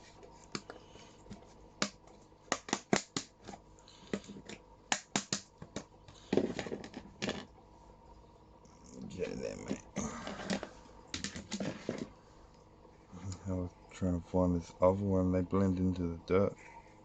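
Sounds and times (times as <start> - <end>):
hands clicking and tapping: 1.8 - 6.5
rustling scrape: 11.5 - 12.2.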